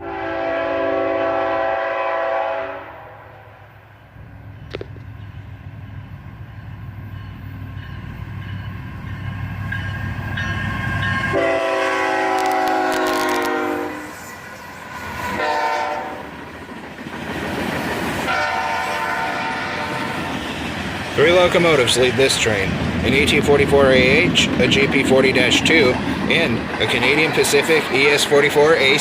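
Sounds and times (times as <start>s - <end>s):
train air horn blasts: 0.0s - 3.6s, 11.3s - 14.4s, 15.2s - 16.3s, 18.3s - 20.3s
diesel locomotive rumble: 3.6s - 29.0s.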